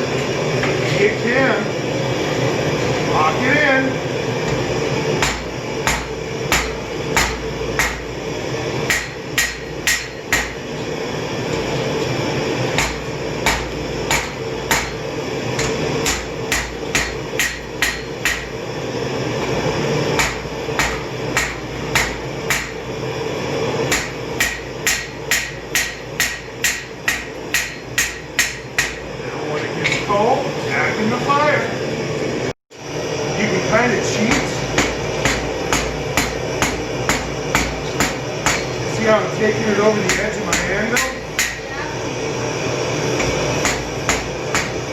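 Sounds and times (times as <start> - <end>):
hammer striking steel on anvil: 4.4 - 8.2, 8.8 - 10.8, 11.4 - 18.6, 20.1 - 22.9, 23.9 - 29.1, 34.3 - 39.1, 39.9 - 41.8, 43.2 - 44.9.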